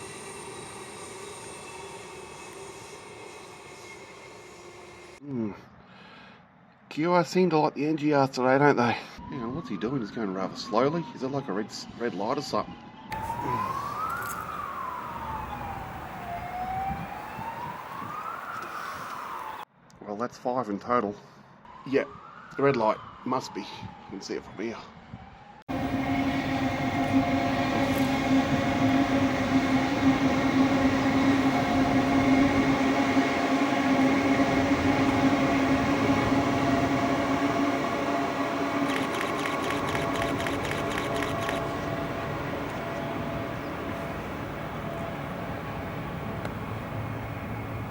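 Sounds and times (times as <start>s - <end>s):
electric train hum: 0.0s - 5.2s, 13.1s - 19.6s, 25.7s - 47.9s
rail rumble: 0.0s - 5.2s, 13.1s - 18.5s, 25.7s - 47.9s
emergency siren wailing: 9.2s - 19.7s, 21.7s - 47.9s.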